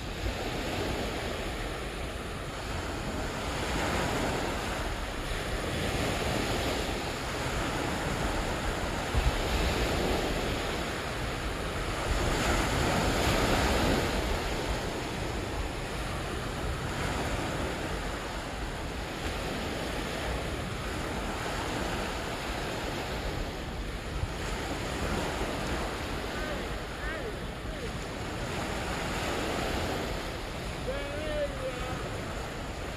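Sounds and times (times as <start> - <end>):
small waves washing onto shore: 0.0 - 32.9
wind rumble on microphone: 0.0 - 32.9.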